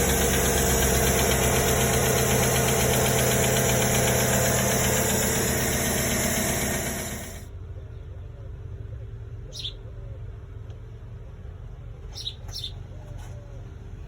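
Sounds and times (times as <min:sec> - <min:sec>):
engine idling: 0:00.0 - 0:09.4.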